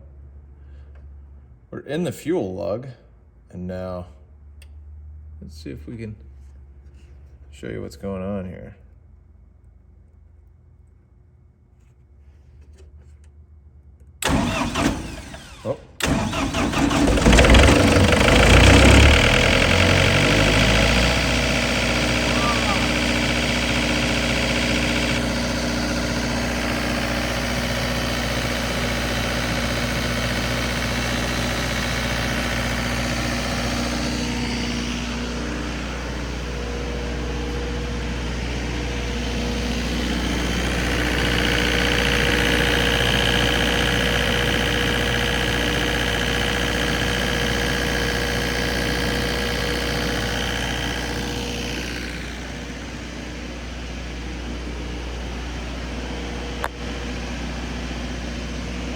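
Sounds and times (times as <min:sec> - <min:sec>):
diesel generator engine running: 0:14.2 - 0:58.9.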